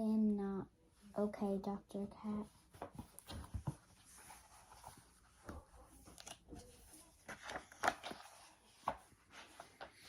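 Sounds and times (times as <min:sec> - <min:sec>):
handling knocks and rustles: 0:02.7 - 0:10.0.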